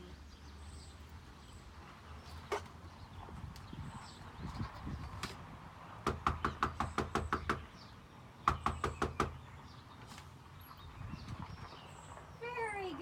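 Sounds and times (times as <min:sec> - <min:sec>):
knuckles knocking on door: 0:06.1 - 0:07.6, 0:08.5 - 0:09.4.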